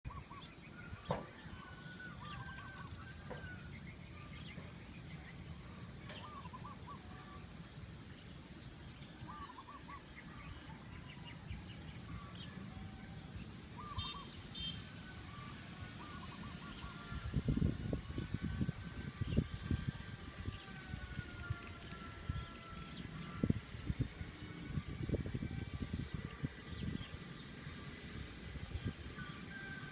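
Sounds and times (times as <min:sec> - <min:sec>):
birds calling: 0:00.1 - 0:29.9
higher bird chirps: 0:08.3 - 0:12.7, 0:13.4 - 0:17.3.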